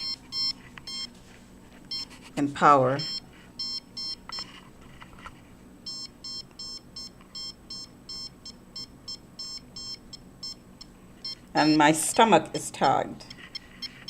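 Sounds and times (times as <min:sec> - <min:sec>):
meter beeping electronic pips: 0:00.0 - 0:01.1, 0:03.0 - 0:04.5, 0:05.9 - 0:14.0.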